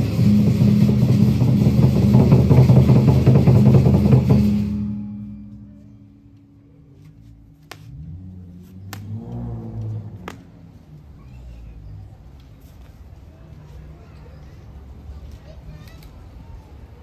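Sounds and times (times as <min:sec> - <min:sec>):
loud music with drums: 0:00.0 - 0:05.0.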